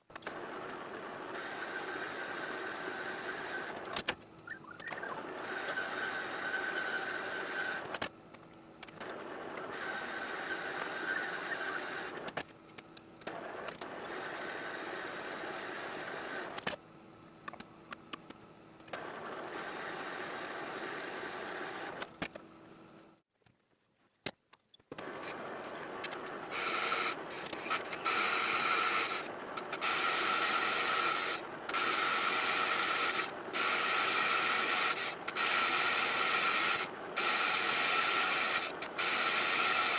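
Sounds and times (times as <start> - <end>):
metal lathe running: 26.4 - 39.9.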